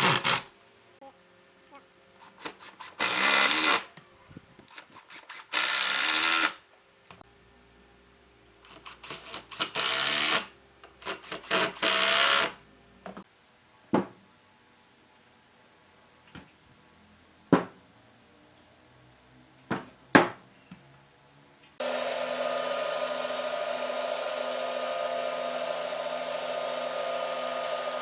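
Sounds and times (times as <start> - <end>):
power drill motor bursts: 0.0 - 0.5, 2.8 - 3.9, 5.2 - 6.6, 11.3 - 12.6, 21.8 - 28.0.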